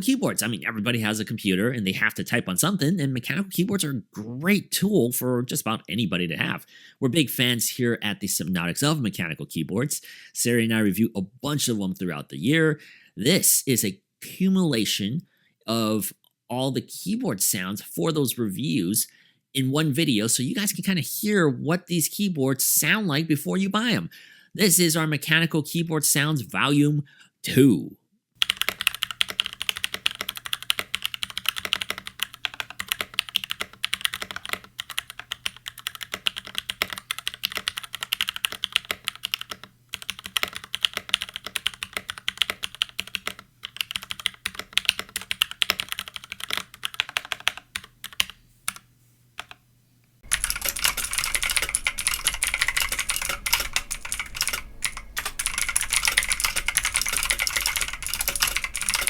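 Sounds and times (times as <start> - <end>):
mechanical keyboard typing: 28.4 - 48.8, 50.3 - 59.0
background hiss: 28.4 - 59.0
low hum: 50.3 - 59.0.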